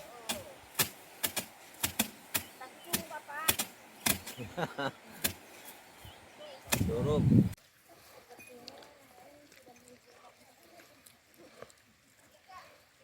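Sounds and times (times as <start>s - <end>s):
sharp irregular knocks: 0.8s - 4.3s.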